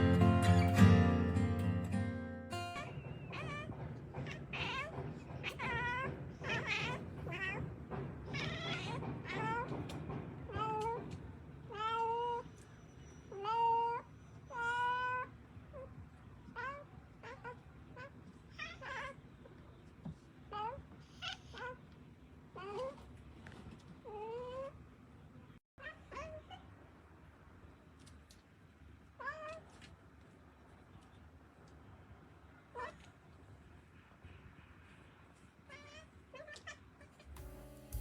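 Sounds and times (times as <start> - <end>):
cats meowing: 2.6 - 12.5, 13.3 - 19.3.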